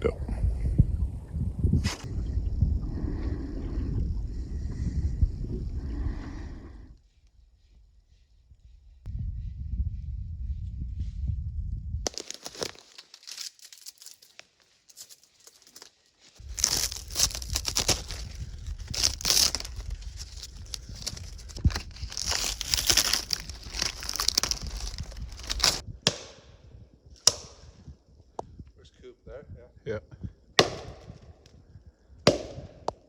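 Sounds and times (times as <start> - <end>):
low rumble: 0.0 - 7.0, 8.8 - 12.1, 16.4 - 26.0
twigs crunching and snapping: 12.1 - 26.4, 27.2 - 27.6.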